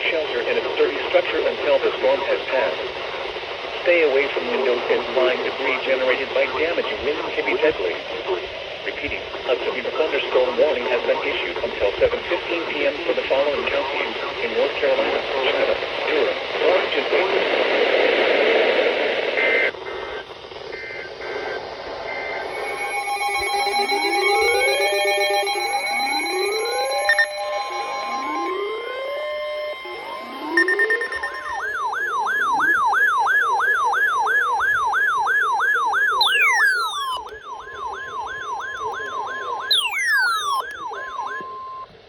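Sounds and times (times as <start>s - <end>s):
electronic siren wailing: 22.4s - 41.9s.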